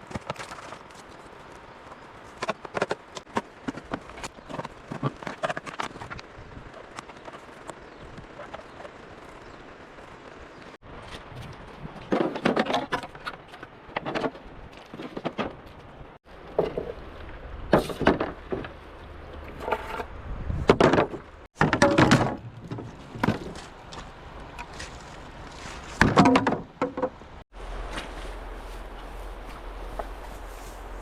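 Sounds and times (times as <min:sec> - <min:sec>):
bamboo knocks and clattering: 0:00.0 - 0:01.2, 0:01.9 - 0:09.0, 0:11.0 - 0:17.1, 0:17.7 - 0:18.8, 0:19.4 - 0:28.4.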